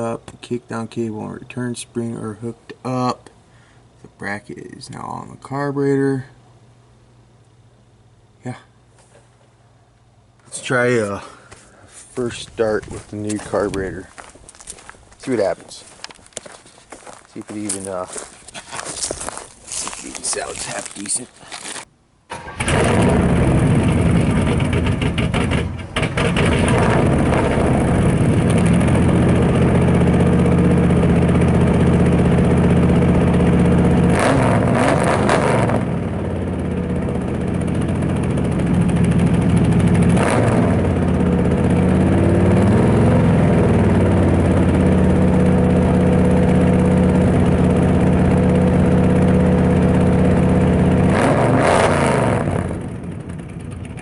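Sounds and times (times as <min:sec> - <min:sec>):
car engine fast idle: 0:36.0 - 0:40.2.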